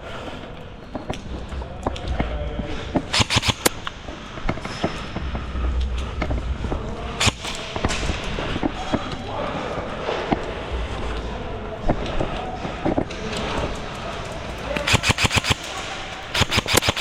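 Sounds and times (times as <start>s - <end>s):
airsoft gun shots: 3.1s - 4.0s, 14.8s - 17.0s.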